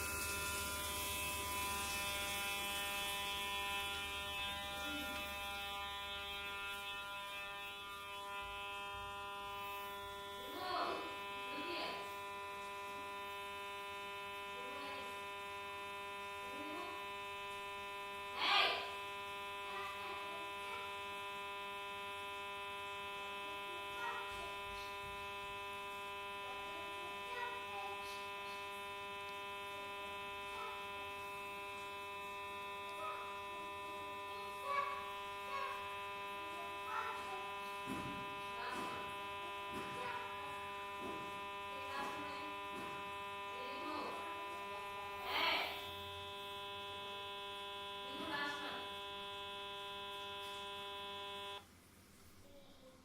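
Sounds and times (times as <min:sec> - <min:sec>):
phone speaker buzzing tone: 0:00.0 - 0:51.6.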